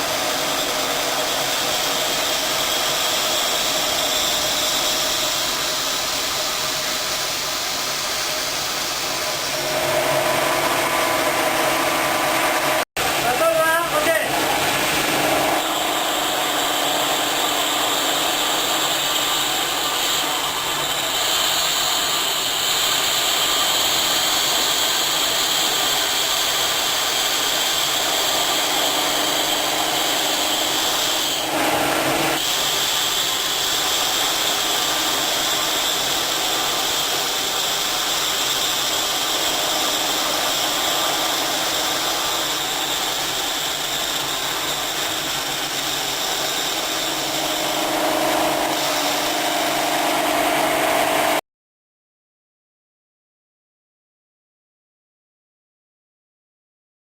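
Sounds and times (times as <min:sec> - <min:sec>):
electric motor whining: 0:38.5 - 0:51.4.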